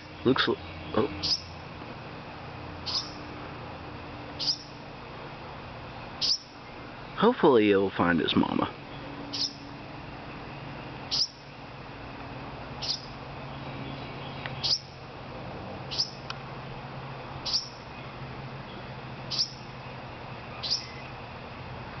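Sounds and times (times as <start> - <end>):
baby bird chirping: 0.8 - 1.6, 2.8 - 3.2, 4.4 - 4.8, 6.2 - 6.8, 8.9 - 9.7, 11.1 - 11.4, 12.8 - 14.9, 15.9 - 16.2, 17.4 - 17.9, 18.7 - 19.6, 20.5 - 21.2.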